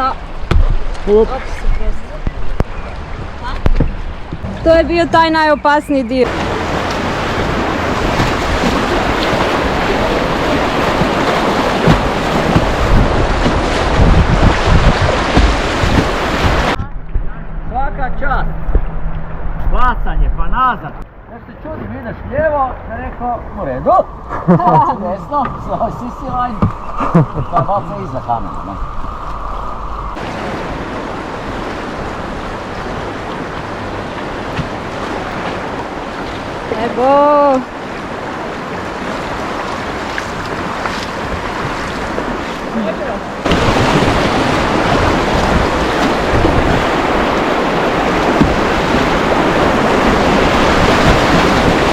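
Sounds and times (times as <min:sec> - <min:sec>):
wind buffeting microphone: 0:00.0 - 0:20.5, 0:23.4 - 0:51.9
river rapid rushing: 0:01.0 - 0:16.8, 0:30.2 - 0:51.9.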